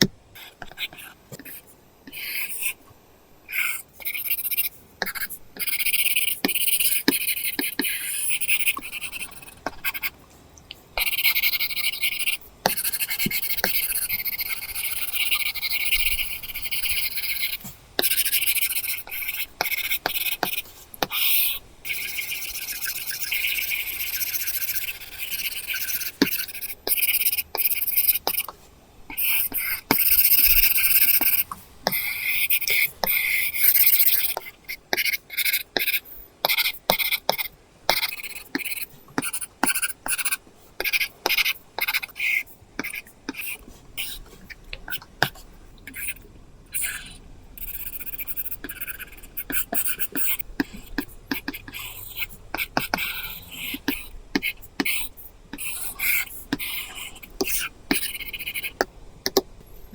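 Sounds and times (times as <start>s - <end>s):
stylus scratching on screen: 3.5s - 10.2s, 11.0s - 37.3s, 46.8s - 58.8s.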